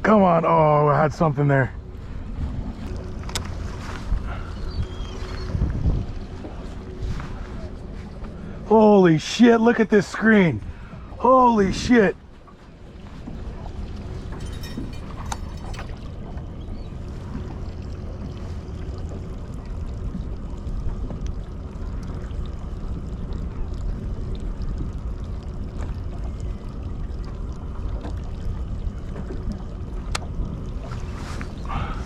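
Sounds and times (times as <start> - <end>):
low rumbling wind and water: 0.0 - 32.0.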